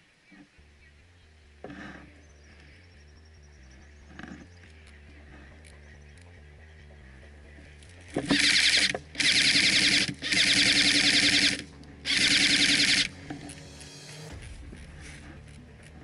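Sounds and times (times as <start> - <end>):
gearbox motor whining: 7.4 - 16.0
airsoft rifle bursts: 8.1 - 13.6.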